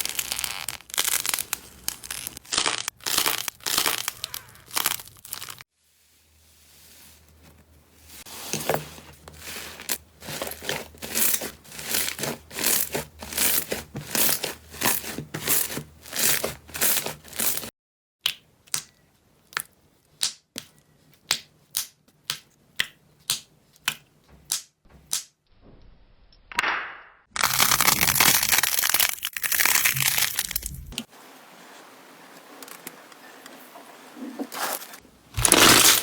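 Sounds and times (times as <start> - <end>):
slime squeezed with crackles: 0.0 - 5.6, 27.4 - 30.8.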